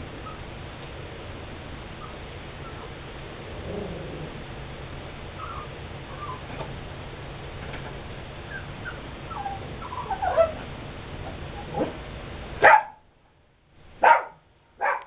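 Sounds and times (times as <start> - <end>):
dog whining: 2.0 - 3.0, 5.4 - 6.6, 8.4 - 10.8
dog barking: 12.6 - 13.0, 14.0 - 15.0.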